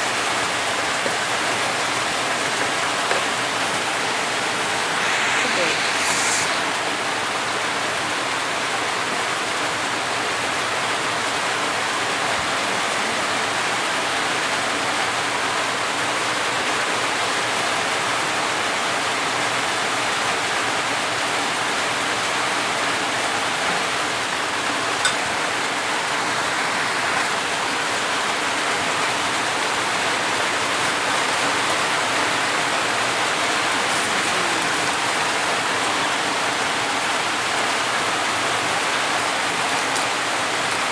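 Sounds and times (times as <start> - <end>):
food sizzling in a pan: 4.0 - 7.1, 31.8 - 35.7.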